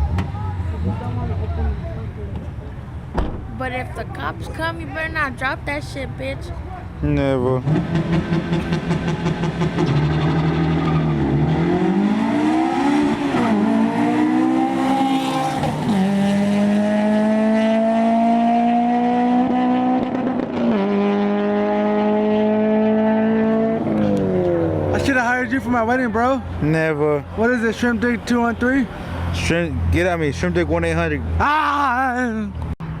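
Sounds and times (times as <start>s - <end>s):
car engine revving: 7.2s - 25.8s.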